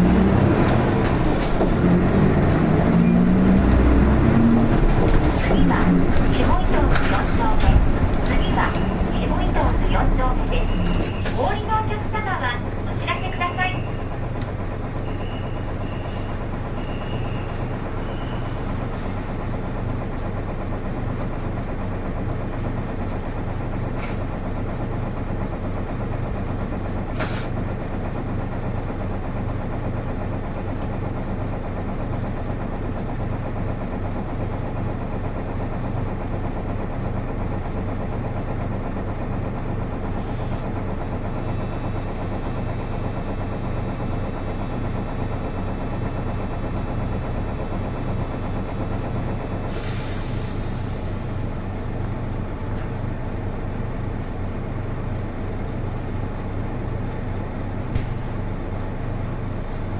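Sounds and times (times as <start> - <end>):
bus diesel engine running: 0.0 - 59.9.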